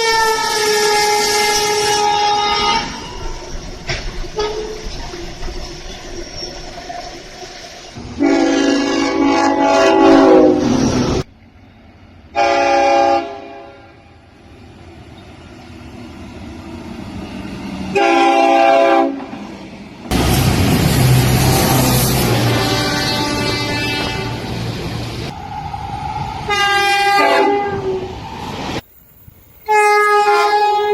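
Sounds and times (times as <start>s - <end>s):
locomotive air horn: 0.0s - 3.3s, 4.4s - 4.8s, 8.0s - 10.8s, 12.4s - 14.2s, 17.9s - 19.4s, 21.4s - 24.6s, 26.5s - 28.1s, 29.6s - 30.9s
train passing by: 0.0s - 30.9s
train rumbling: 0.0s - 30.9s.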